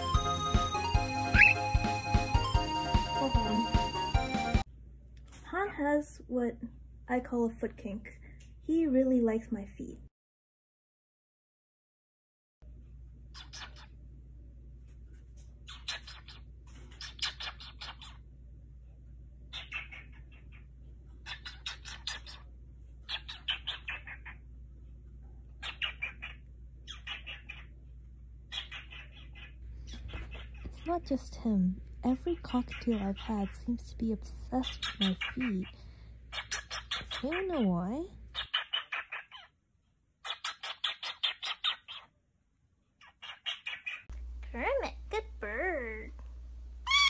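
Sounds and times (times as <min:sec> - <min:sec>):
cockatiel chirping: 0:01.2 - 0:02.0, 0:13.3 - 0:14.0, 0:15.6 - 0:18.2, 0:19.5 - 0:24.4, 0:25.6 - 0:27.8, 0:28.5 - 0:30.9, 0:34.5 - 0:37.6, 0:38.3 - 0:39.5, 0:40.2 - 0:42.1, 0:43.0 - 0:44.1.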